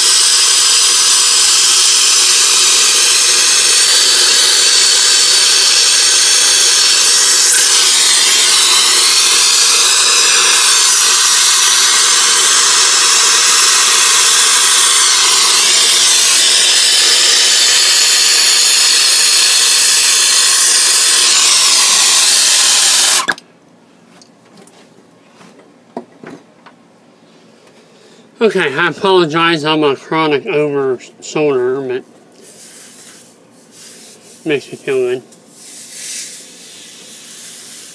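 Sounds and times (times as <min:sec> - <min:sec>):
brazing torch flame hissing: 0:00.0 - 0:23.4, 0:35.6 - 0:37.9.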